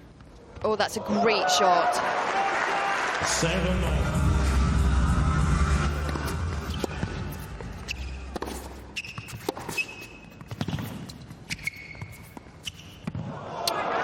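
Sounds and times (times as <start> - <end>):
background music: 3.2 - 8.8
tennis ball bouncing: 5.9 - 13.3
racket striking ball: 6.0 - 13.3
shoe squeaks on court: 6.6 - 13.2.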